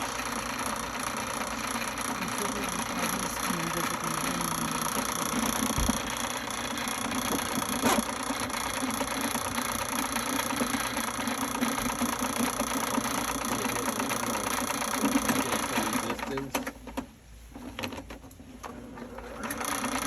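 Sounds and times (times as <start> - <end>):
drain-cleaning machine humming: 0.0 - 16.8, 18.7 - 20.0.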